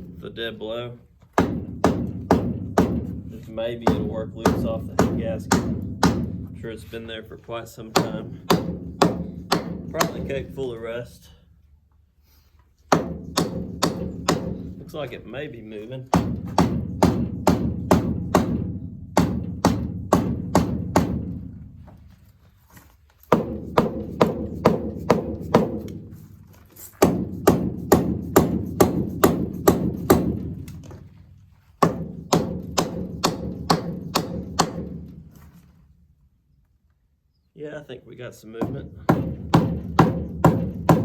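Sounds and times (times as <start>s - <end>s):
hammer tapping metal: 7.9s - 10.4s, 12.9s - 14.8s, 27.0s - 30.6s, 31.8s - 35.0s.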